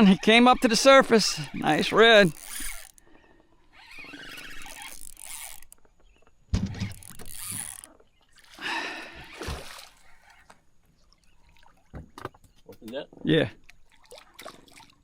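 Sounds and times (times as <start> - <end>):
fishing reel gear whir: 0.0 - 8.2.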